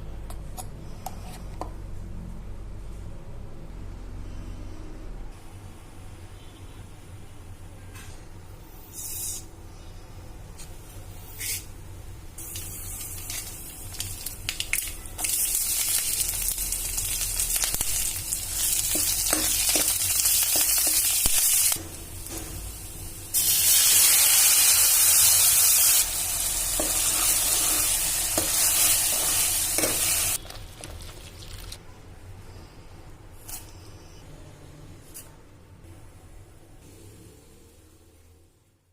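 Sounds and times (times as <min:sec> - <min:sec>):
food sizzling in hot oil: 0:12.4 - 0:22.4, 0:23.3 - 0:30.5.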